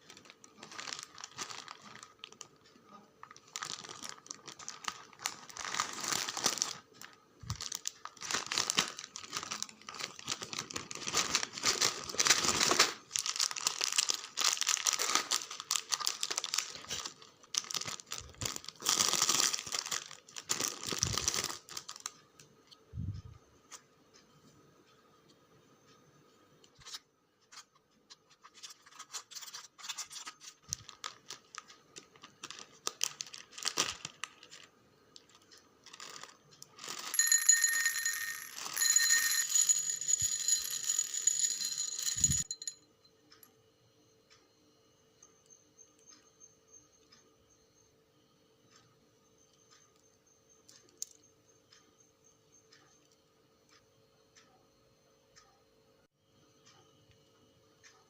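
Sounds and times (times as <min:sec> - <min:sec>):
packaging crinkling and tearing: 0:00.0 - 0:02.6, 0:03.2 - 0:22.1, 0:28.3 - 0:37.2.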